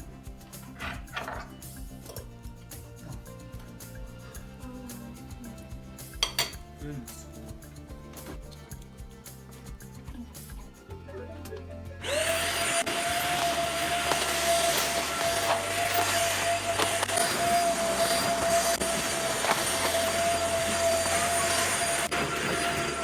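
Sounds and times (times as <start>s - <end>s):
vacuum cleaner running: 12.0s - 23.0s.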